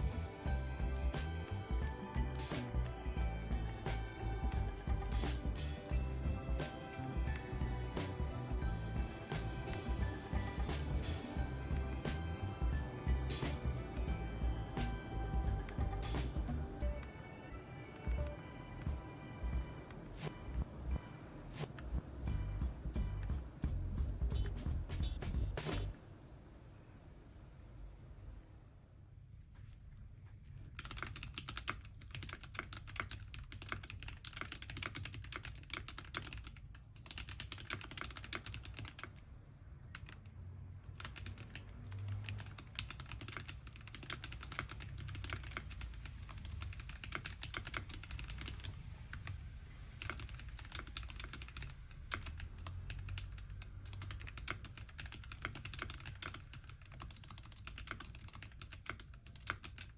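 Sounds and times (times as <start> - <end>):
mechanical keyboard typing: 30.6 - 39.2, 39.9 - 40.3, 40.9 - 59.9.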